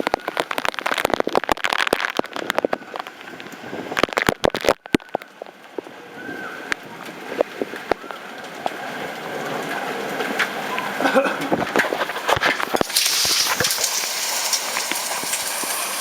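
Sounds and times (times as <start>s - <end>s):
hail striking hard surfaces: 0.0s - 5.9s, 6.7s - 16.0s
heavy rain: 0.0s - 16.0s.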